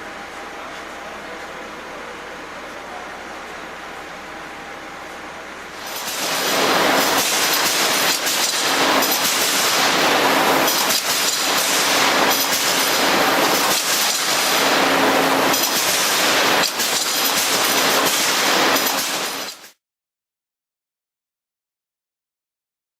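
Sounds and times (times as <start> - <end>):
wire cutting machine rattling: 5.8 - 19.8.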